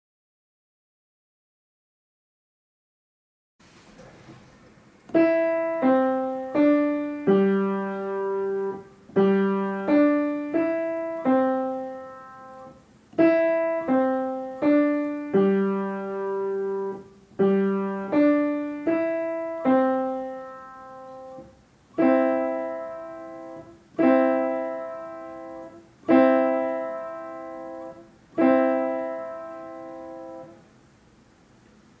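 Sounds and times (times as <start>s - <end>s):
slow solo piano melody: 5.1s - 30.6s
piano chords ringing: 5.1s - 30.8s.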